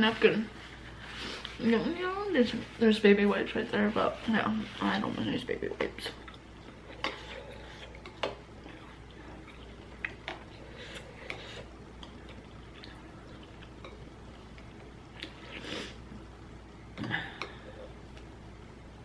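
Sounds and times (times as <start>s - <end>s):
person chewing noodles: 6.1s - 15.6s.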